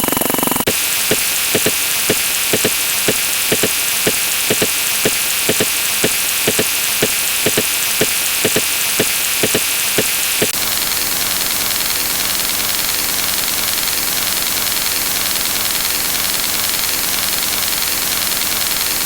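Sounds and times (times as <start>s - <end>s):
faint high whine: 0.0s - 10.8s
static hiss: 0.7s - 10.6s.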